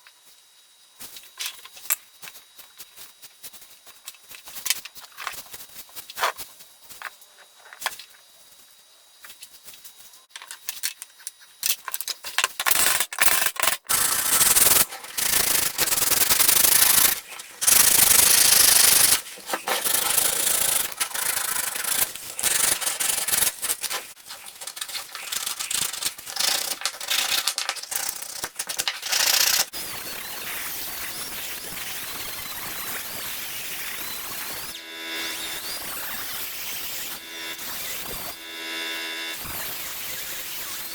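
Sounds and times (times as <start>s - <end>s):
sandpaper rubbing on wood: 14.0s - 26.8s.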